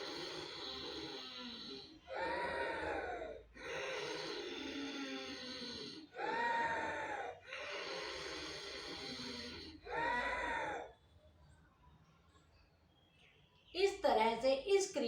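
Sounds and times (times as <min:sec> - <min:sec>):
woman making snoring sounds: 0:00.0 - 0:06.4, 0:07.5 - 0:09.8.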